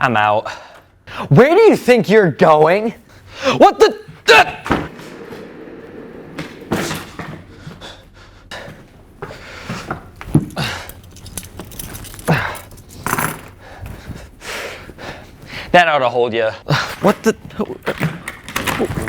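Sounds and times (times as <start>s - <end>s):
knocks and thuds: 4.6s - 8.0s
people grunting and panting: 7.5s - 11.0s, 12.0s - 15.4s.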